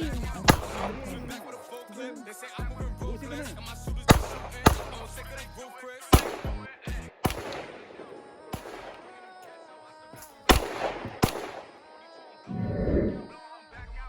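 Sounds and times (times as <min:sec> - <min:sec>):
gunshots: 0:00.0 - 0:01.9, 0:04.1 - 0:05.4, 0:06.1 - 0:12.2
background music: 0:00.0 - 0:14.0.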